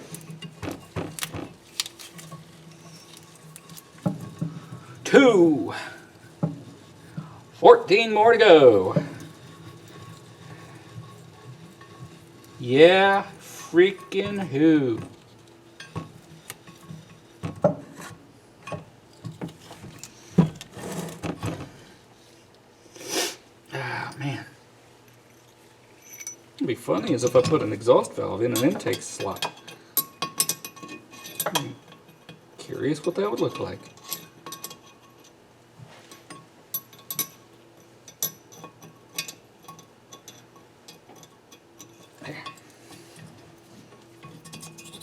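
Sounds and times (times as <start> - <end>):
metallic clinks of tools and parts: 25.3 - 26.4, 28.5 - 32.4, 33.0 - 35.4, 36.0 - 43.3
metal parts clinking and knocking: 36.1 - 42.6.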